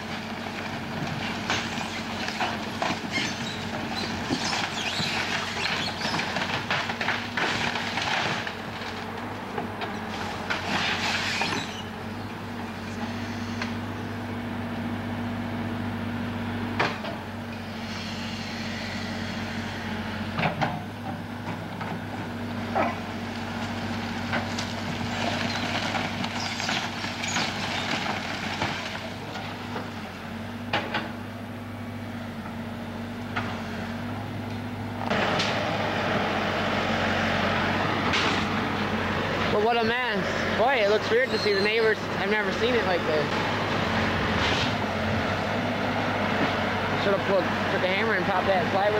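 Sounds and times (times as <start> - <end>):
wood cracking and crunching: 0.0 - 11.9, 22.8 - 29.9
heavy machine engine running: 0.0 - 48.9.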